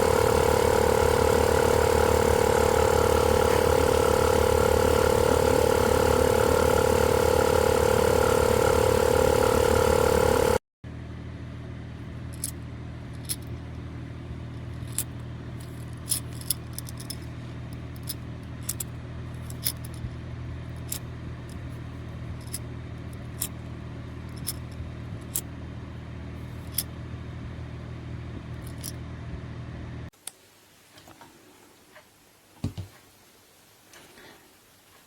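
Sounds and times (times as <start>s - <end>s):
sharp clicks and rattles: 0.0s - 10.6s, 12.2s - 13.8s, 14.5s - 25.5s, 26.6s - 27.0s, 28.4s - 29.0s
air compressor motor hum: 0.0s - 15.9s.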